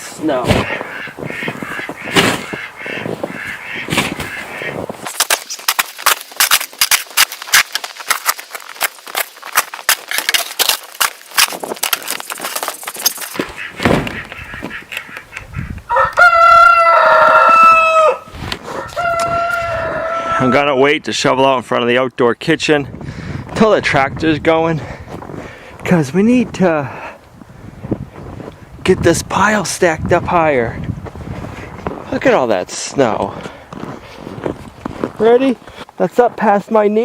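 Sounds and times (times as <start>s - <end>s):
crunching snow: 0.0s - 15.2s, 16.8s - 20.1s, 24.9s - 28.7s, 30.9s - 37.0s
rooster crowing: 15.9s - 20.6s.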